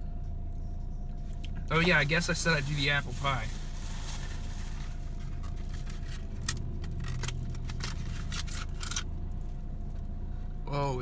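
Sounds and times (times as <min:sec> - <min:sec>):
steady low hum: 0:00.0 - 0:11.0
cardboard packaging rustling: 0:02.5 - 0:06.4.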